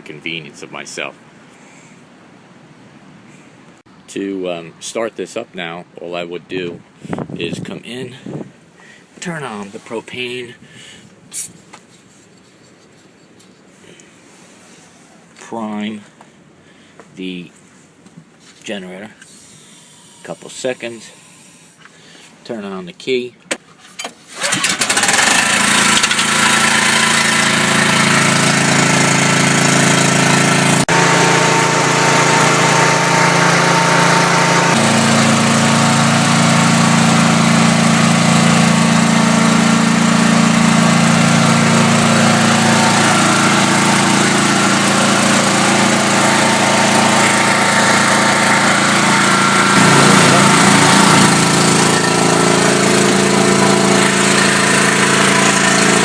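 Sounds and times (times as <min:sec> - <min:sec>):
portable generator running: 0:24.4 - 0:56.0.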